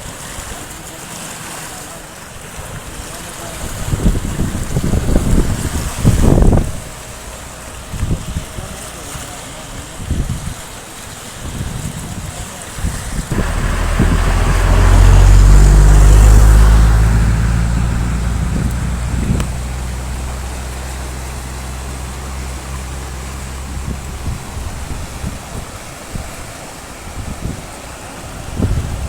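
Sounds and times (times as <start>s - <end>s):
vehicle engine running: 13.3s - 25.8s
rushing hiss: 13.3s - 25.9s.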